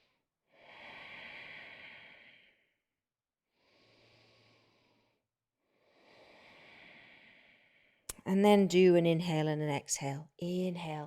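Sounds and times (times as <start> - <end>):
person breathing deeply: 0.0 - 2.8, 3.6 - 8.1.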